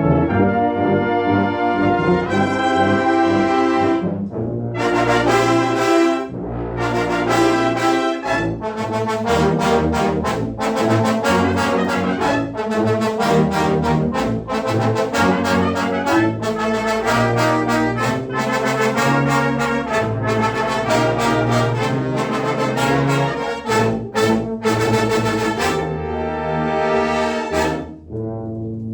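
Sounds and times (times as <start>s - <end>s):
brass ensemble playing fanfare: 0.0s - 28.0s.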